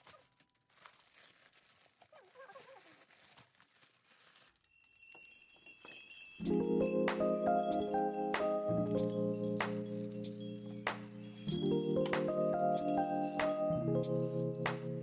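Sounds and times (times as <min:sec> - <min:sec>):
paper packaging rustling: 0:00.0 - 0:05.0
chime-like music: 0:04.7 - 0:15.0
mallet percussion music with bells: 0:04.8 - 0:14.4.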